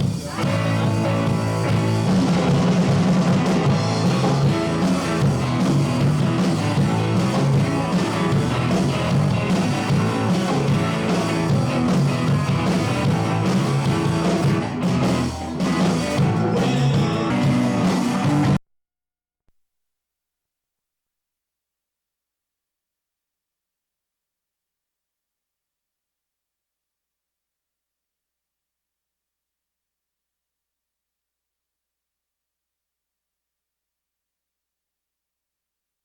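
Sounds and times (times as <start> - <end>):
drum kit: 0.0 - 18.6
electric guitar: 0.0 - 18.6
rock band playing live: 0.0 - 18.6.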